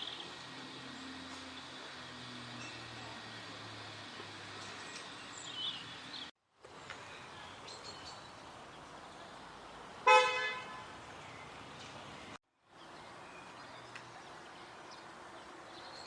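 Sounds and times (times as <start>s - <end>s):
outdoor background noise: 0.0s - 16.0s
car horn toot: 10.0s - 10.9s.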